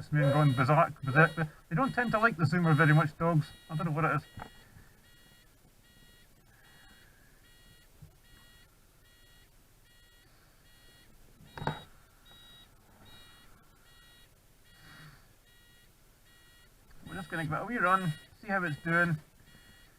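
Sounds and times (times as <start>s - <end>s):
electronic beeper short tones: 0.2s - 4.4s, 16.4s - 19.8s.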